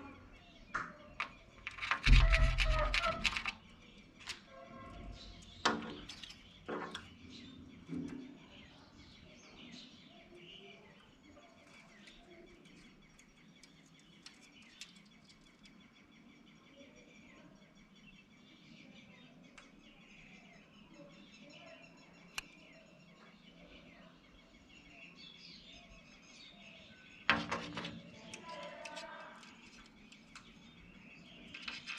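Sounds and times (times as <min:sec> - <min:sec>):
birds chirping faintly: 0:00.0 - 0:31.9.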